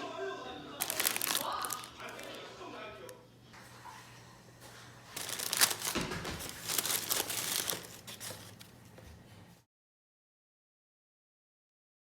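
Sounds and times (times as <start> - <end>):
packaging crinkling and rustling: 0.8 - 2.4, 5.1 - 8.8.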